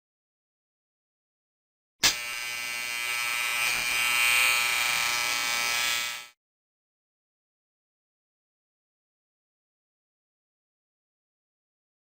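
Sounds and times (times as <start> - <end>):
electric shaver buzzing: 2.0 - 6.4.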